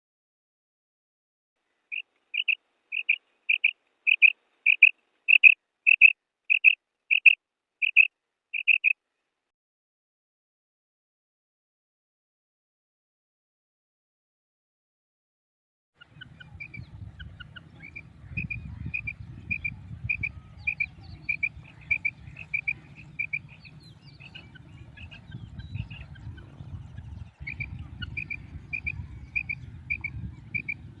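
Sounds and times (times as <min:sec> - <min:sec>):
quail calling: 0:01.9 - 0:09.0, 0:16.0 - 0:31.0.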